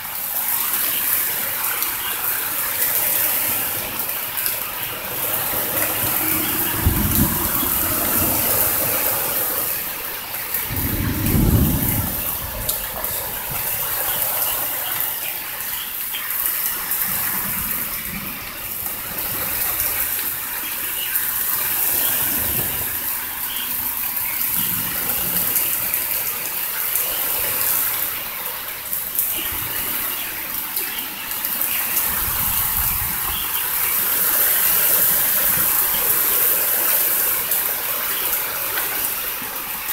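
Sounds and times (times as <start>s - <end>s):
heavy rain and wind: 0.0s - 39.9s
thunder rumbles: 2.4s - 15.1s.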